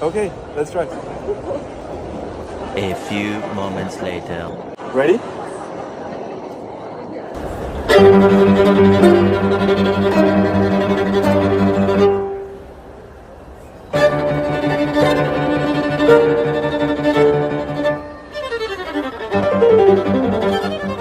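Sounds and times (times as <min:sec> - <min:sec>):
violin with bowed strings: 0:07.7 - 0:12.6, 0:13.9 - 0:21.0.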